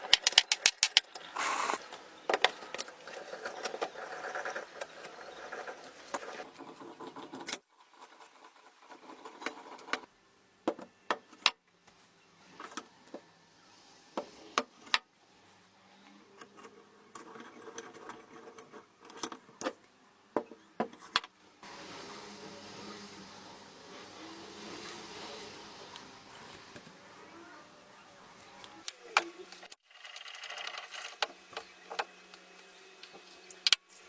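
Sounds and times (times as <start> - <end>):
metal parts clinking: 0.0 - 1.1.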